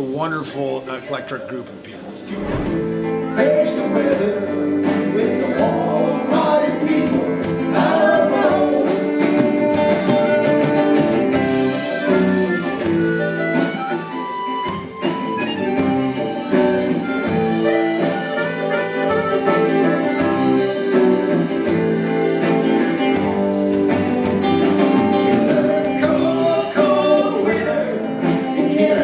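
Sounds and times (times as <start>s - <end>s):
harmonica: 5.6s - 29.0s
accordion: 10.0s - 25.4s.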